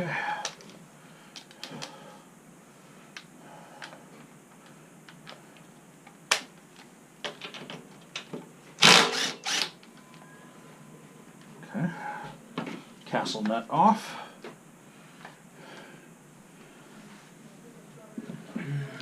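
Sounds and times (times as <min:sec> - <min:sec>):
short bursts of wrench noise: 0:08.8 - 0:09.8.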